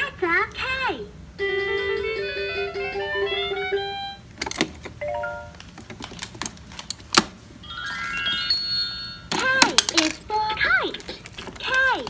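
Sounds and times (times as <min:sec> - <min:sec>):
plastic toy clicks and knocks: 0:04.3 - 0:05.0, 0:09.3 - 0:12.0
toy playing electronic jingles: 0:07.6 - 0:12.0.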